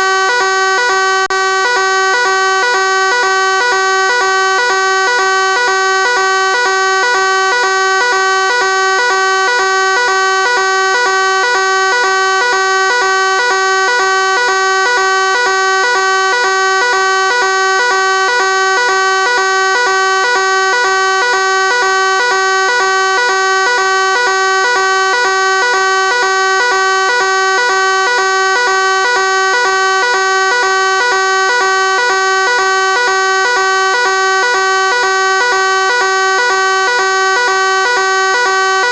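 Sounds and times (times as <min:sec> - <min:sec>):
fire alarm buzzing tone: 0:00.0 - 0:38.9.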